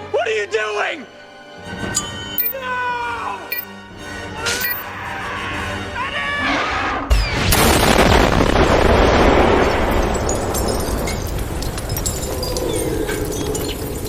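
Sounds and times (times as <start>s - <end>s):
explosion boom and rumble: 7.1s - 12.3s.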